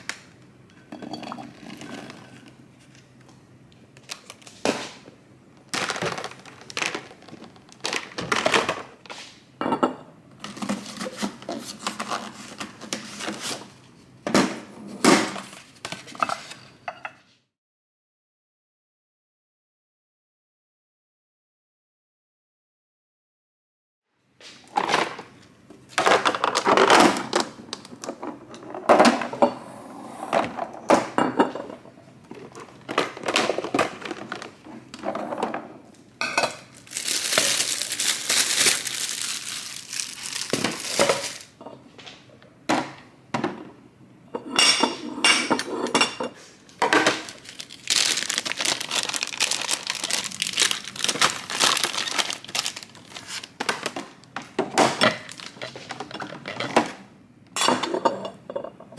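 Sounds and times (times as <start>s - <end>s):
jars and dishes clinking: 0.7s - 2.4s, 57.6s - 58.9s
packaging crinkling: 5.7s - 8.6s, 36.6s - 41.5s, 46.9s - 54.4s, 55.0s - 56.4s.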